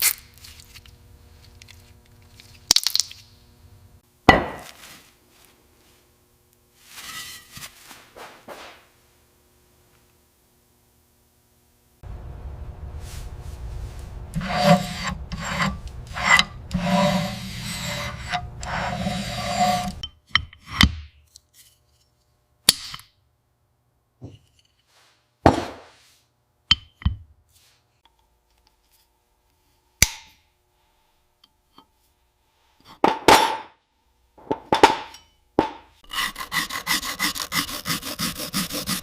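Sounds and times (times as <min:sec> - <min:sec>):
rough scraping and rubbing: 0:06.8 - 0:08.8, 0:13.0 - 0:20.0, 0:36.0 - 0:39.0.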